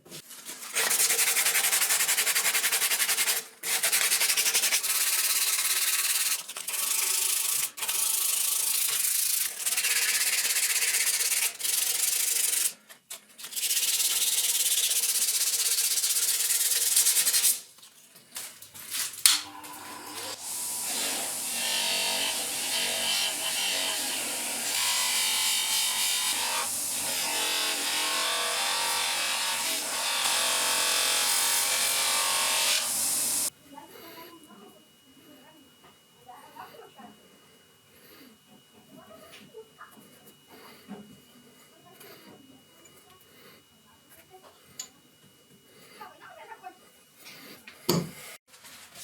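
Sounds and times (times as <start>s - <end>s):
sanding rusty metal: 0.6s - 12.8s, 13.4s - 17.7s, 19.9s - 33.5s.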